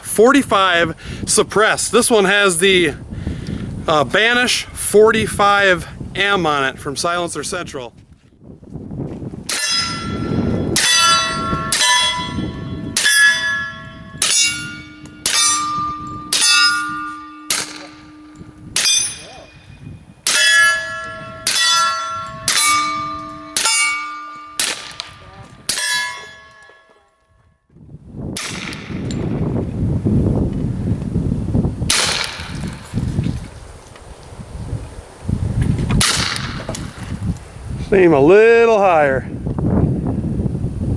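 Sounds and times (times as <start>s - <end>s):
steel targets clanging: 9.5s - 27.2s, 31.9s - 33.2s
suppressed pistol shots: 17.4s - 19.0s, 24.6s - 25.8s, 28.4s - 29.2s, 31.9s - 32.9s.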